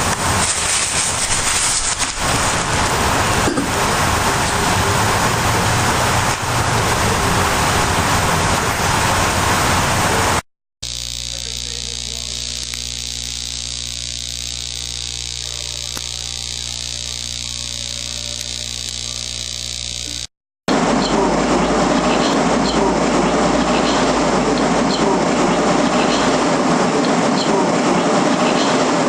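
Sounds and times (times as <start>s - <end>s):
loud steady hiss: 0.0s - 21.6s.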